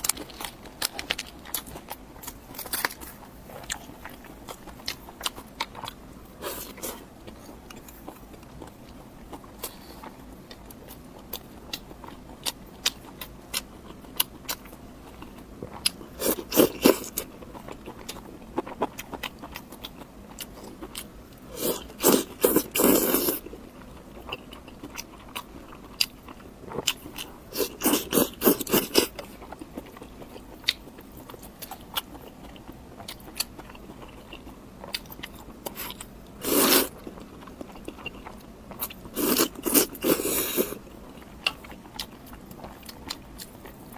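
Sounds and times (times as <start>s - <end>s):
crunchy bites and chewing: 0.0s - 23.5s.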